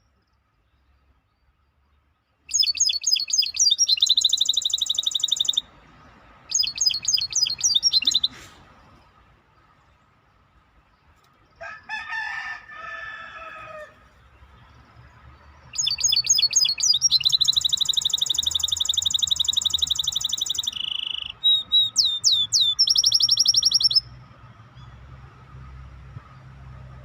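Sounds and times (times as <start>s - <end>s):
songbird singing fast trills: 2.3s - 5.8s, 6.4s - 9.0s, 14.3s - 25.1s
soft lower bird call: 2.5s - 5.7s, 6.5s - 9.2s, 15.7s - 24.2s.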